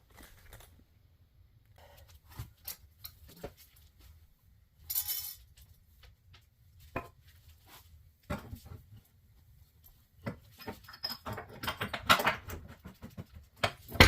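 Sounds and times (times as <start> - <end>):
metal tools clinking: 4.9 - 5.5.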